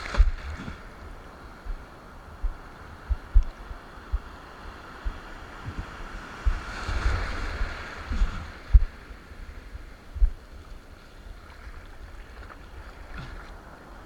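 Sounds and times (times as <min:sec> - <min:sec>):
wind buffeting microphone: 0:00.0 - 0:10.8
sea water rushing: 0:00.0 - 0:14.0.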